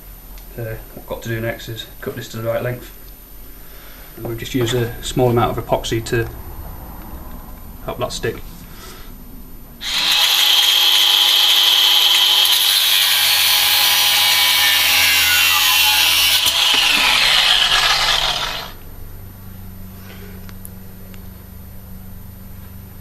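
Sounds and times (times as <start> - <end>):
power tool grinding whine: 9.8 - 18.8.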